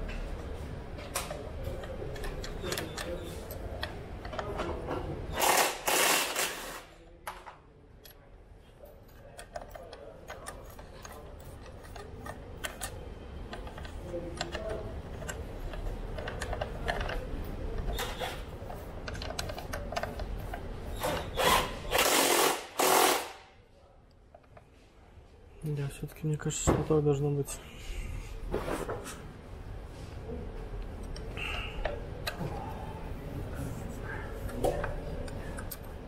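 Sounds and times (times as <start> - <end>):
tools clicking and rattling: 8.8 - 23.2.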